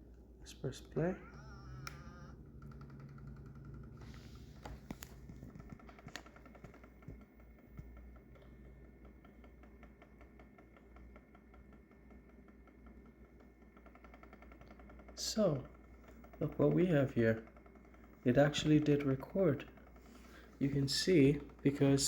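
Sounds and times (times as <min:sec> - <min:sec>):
low hum: 0:00.0 - 0:10.9
faint rapid mechanical ticking: 0:00.7 - 0:22.0
soft clicks: 0:00.8 - 0:10.4.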